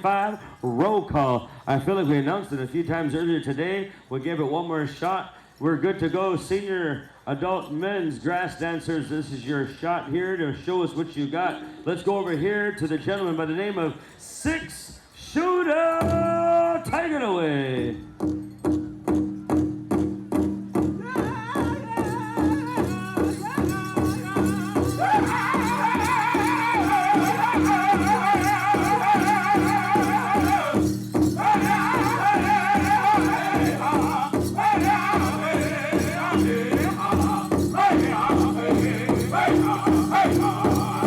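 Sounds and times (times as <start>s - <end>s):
big drum steady beat: 19.4s - 41.0s
men singing in high voices: 21.0s - 41.0s.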